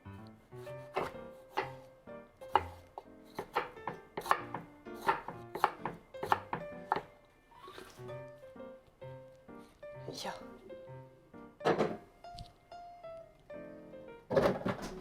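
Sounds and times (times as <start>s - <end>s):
knife chopping on cutting board: 0.7s - 1.9s, 2.5s - 7.1s.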